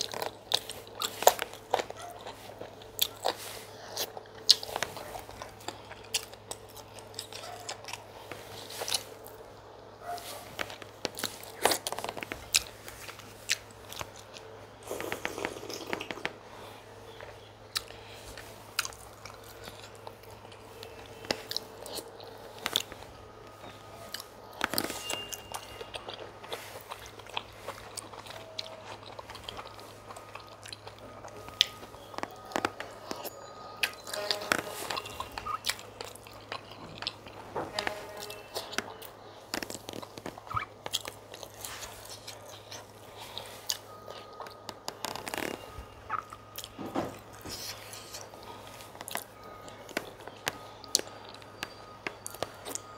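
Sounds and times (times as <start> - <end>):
chewing and biting: 0.0 - 16.4, 17.0 - 52.9
sharp clicks and crunches: 10.1 - 16.4, 17.8 - 42.8.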